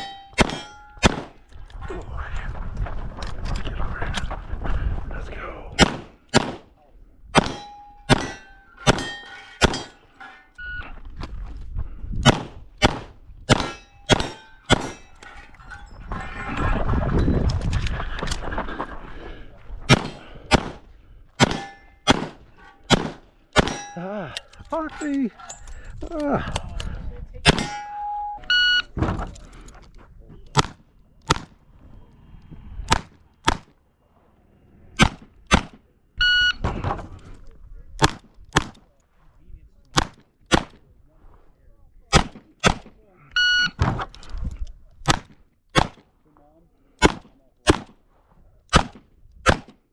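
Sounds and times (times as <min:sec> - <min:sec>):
steel targets ringing: 0:00.0 - 0:01.1, 0:07.4 - 0:10.6, 0:23.6 - 0:24.1, 0:27.5 - 0:28.5.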